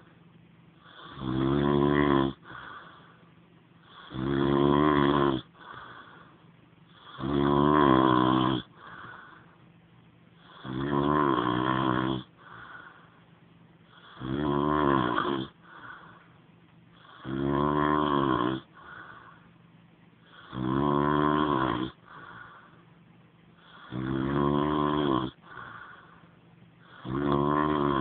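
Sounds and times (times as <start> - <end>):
man snoring: 0.8 - 3.2, 3.8 - 6.3, 6.9 - 9.4, 10.4 - 13.0, 13.9 - 16.2, 17.0 - 19.4, 20.2 - 22.8, 23.6 - 26.2, 26.8 - 28.0
soft breathing: 2.4 - 4.2, 5.5 - 7.2, 8.7 - 10.6, 12.3 - 14.2, 15.5 - 17.3, 18.6 - 20.6, 21.9 - 24.0, 25.3 - 27.1.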